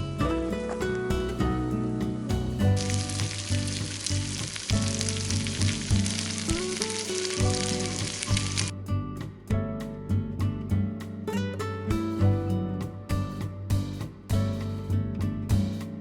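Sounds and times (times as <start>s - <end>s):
background music: 0.0s - 16.0s
food sizzling in a pan: 2.6s - 8.7s.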